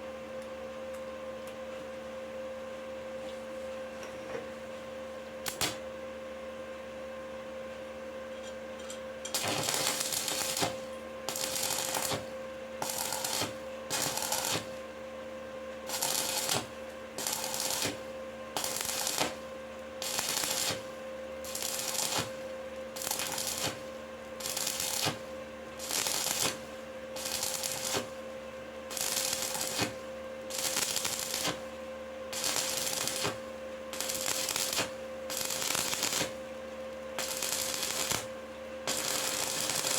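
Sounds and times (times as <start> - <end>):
steady electrical hum: 0.0 - 39.9
welding arc crackling: 5.4 - 5.8, 9.2 - 14.8, 15.8 - 28.2, 28.9 - 31.7, 32.3 - 36.4, 37.2 - 39.9.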